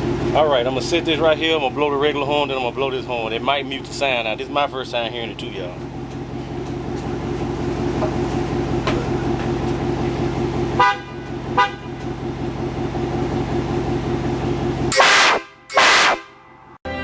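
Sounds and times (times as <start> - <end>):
air compressor humming: 0.0 - 16.2
truck horn honks: 10.6 - 12.4, 14.8 - 17.0.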